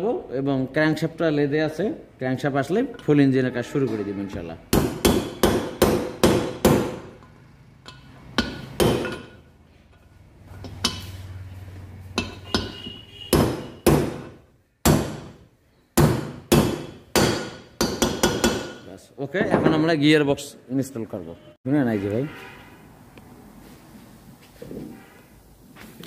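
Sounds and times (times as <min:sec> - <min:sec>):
hammer striking metal: 0:04.7 - 0:09.5, 0:12.2 - 0:15.4, 0:16.0 - 0:18.9.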